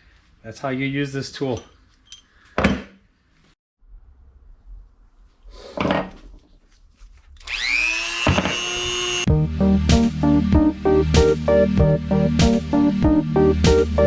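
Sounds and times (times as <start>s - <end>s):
power tool whining: 7.4s - 9.3s.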